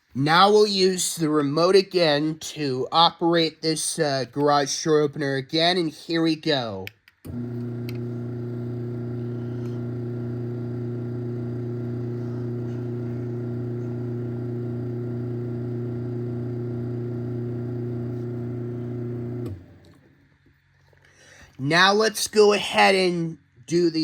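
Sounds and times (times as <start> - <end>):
garage door opener motor hum: 7.3 - 20.1.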